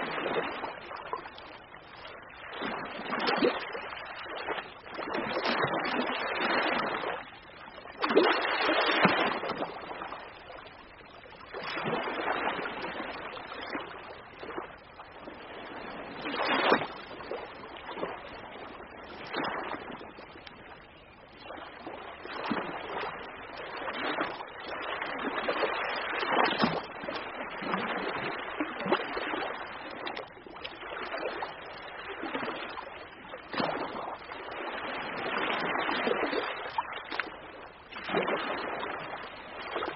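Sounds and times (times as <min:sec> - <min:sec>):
ocean waves breaking on shore: 0:00.0 - 0:39.9.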